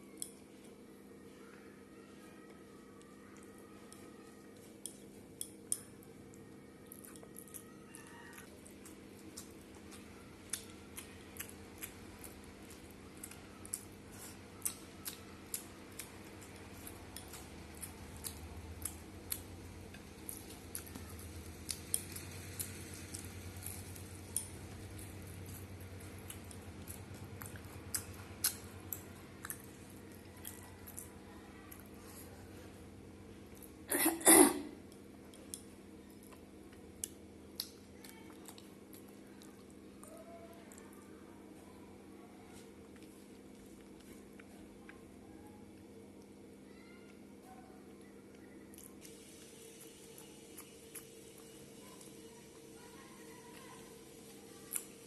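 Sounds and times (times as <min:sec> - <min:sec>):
person chewing food: 0:02.4 - 0:33.9, 0:34.9 - 0:41.7, 0:42.6 - 0:46.4, 0:47.9 - 0:52.9, 0:53.5 - 0:55.0.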